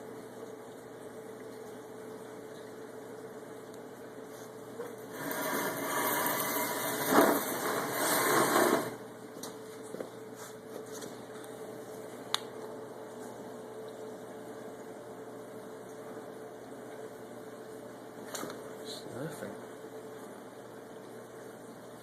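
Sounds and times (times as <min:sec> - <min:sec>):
aquarium equipment hum: 0:00.0 - 0:22.0.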